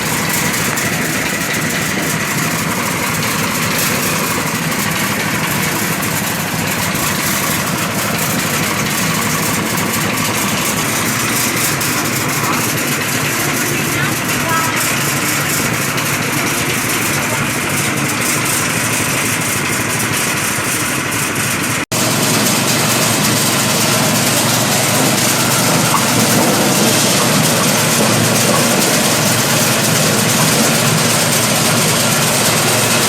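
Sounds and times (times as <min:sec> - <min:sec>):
peeling machine running: 0:00.0 - 0:33.0.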